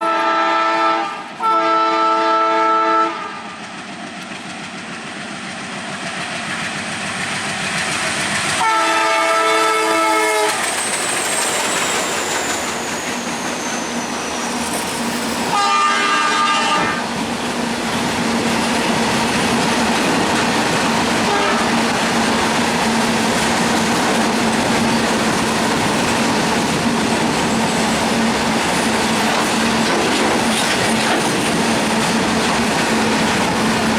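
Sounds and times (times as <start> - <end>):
locomotive horn blasts: 0.0 - 3.6, 8.6 - 10.6, 15.5 - 17.1, 21.3 - 21.8
diesel locomotive engines: 0.0 - 33.9
train wheels clacking on rails: 3.0 - 33.9.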